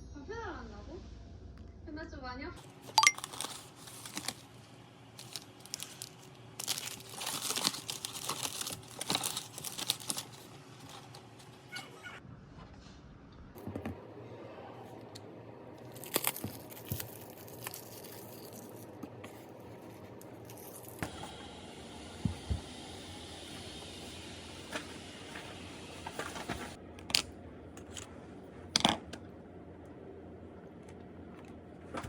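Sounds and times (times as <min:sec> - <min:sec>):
room hum: 0:00.0 - 0:32.0
objects being handled: 0:02.7 - 0:04.5, 0:05.2 - 0:12.0, 0:15.8 - 0:21.2, 0:22.3 - 0:29.1.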